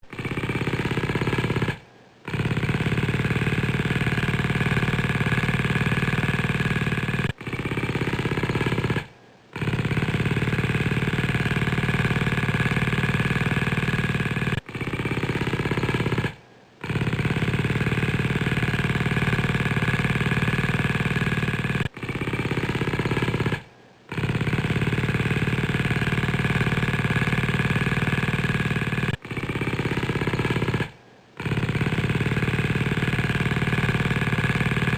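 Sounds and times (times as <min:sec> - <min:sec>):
motorcycle exhaust running: 0:00.0 - 0:34.9.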